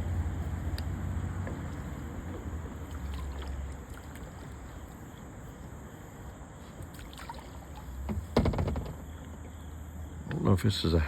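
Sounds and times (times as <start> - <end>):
water splashing and lapping: 0.0 - 8.3.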